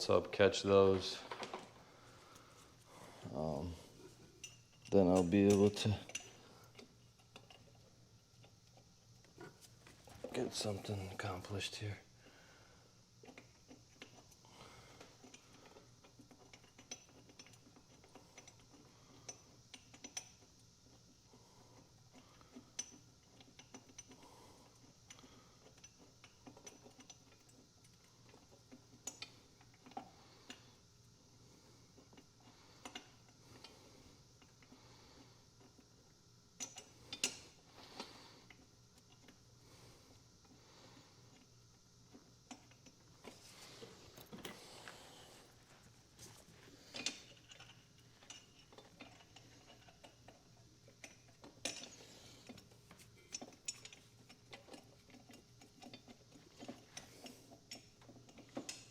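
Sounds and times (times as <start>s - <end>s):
metal tools clinking on bolts: 4.3s - 6.4s, 46.9s - 58.9s.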